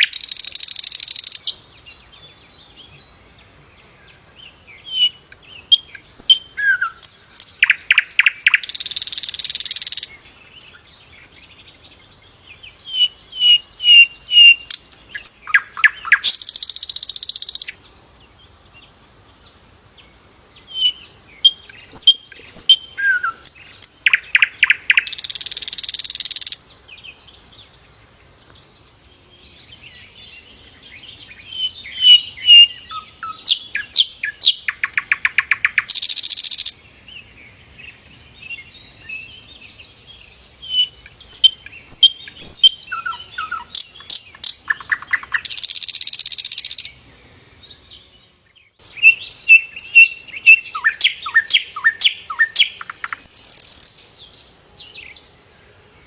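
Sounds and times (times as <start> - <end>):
bird singing chattering song: 0.0 - 55.6
fast buzzing bird trill: 48.9 - 54.0.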